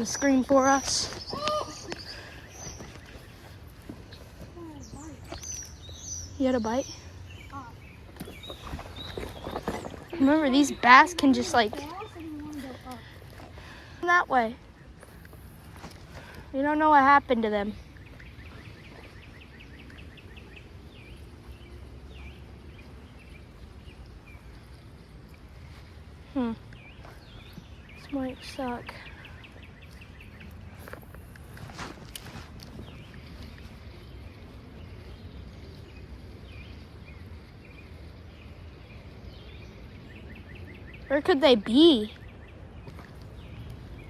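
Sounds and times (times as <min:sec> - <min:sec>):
high bird chirps: 0:00.0 - 0:12.5
songbird singing: 0:00.0 - 0:44.0.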